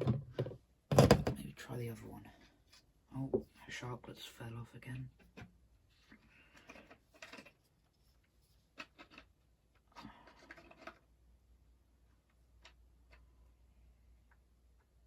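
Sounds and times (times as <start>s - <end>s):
plastic parts clicking and rubbing: 5.2s - 11.2s.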